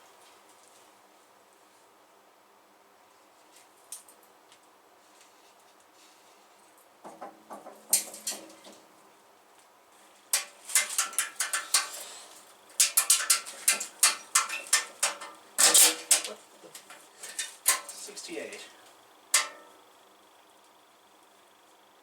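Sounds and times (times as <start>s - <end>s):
hard objects clicking and clattering: 10.4s - 18.1s.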